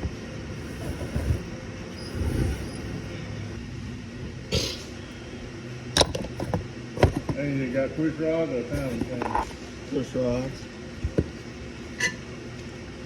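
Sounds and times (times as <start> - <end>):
low steady hum: 0.0 - 13.0
tools and engine parts knocking: 6.0 - 7.4.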